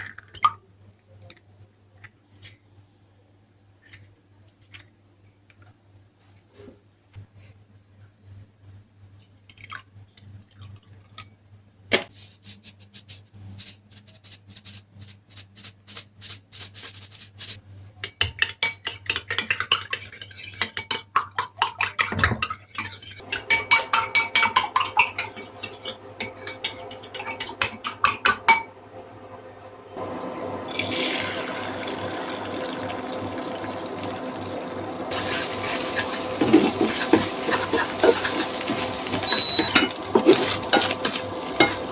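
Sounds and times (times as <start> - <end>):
metal utensils clinking on dishes: 18.2 - 28.7, 35.1 - 41.9
running water: 30.6 - 41.9.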